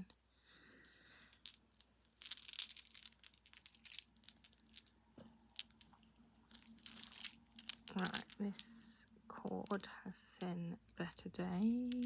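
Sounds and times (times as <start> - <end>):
beads clicking while handled: 0.8 - 8.9, 11.2 - 12.0.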